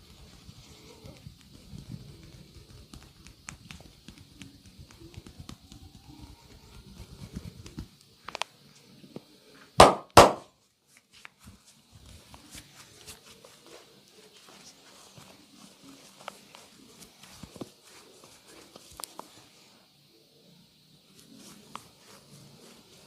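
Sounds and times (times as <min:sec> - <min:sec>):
hands tapping on a body: 0:00.7 - 0:08.4, 0:09.8 - 0:10.4
loud sharp impacts: 0:09.8 - 0:10.4.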